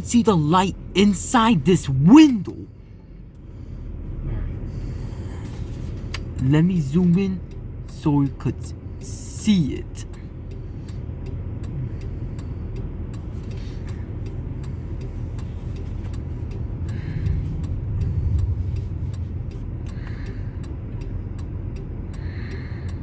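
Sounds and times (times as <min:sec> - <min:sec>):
car engine idling: 0:00.0 - 0:23.0
steady ticking clicks: 0:05.0 - 0:23.0.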